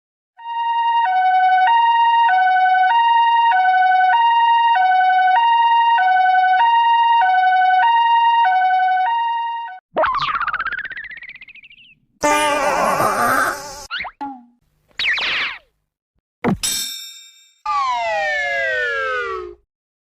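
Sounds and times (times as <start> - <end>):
two-tone siren: 0.4 - 9.8, 17.7 - 19.6.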